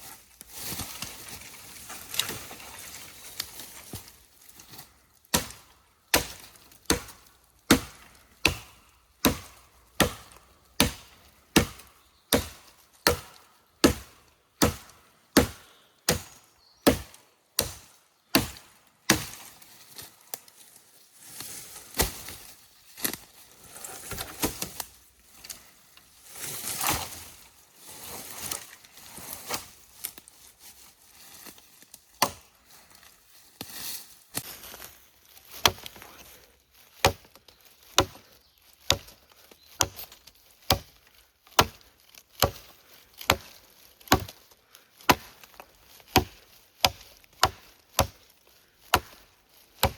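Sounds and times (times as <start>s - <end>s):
wood cracking and rustling: 0.6s - 5.0s
chopping strikes on wood: 5.3s - 19.4s, 32.2s - 32.5s, 35.6s - 36.0s, 37.0s - 37.4s, 38.0s - 38.2s, 39.8s - 40.1s, 40.7s - 40.9s, 41.5s - 41.8s, 42.4s - 43.5s, 44.1s - 44.4s, 45.0s - 45.3s, 46.1s - 48.2s, 48.9s - 49.2s.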